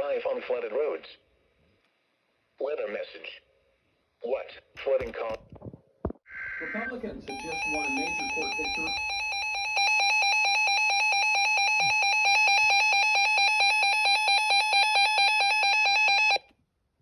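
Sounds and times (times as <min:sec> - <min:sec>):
warbling electronic alert tone: 0:06.6 - 0:16.4.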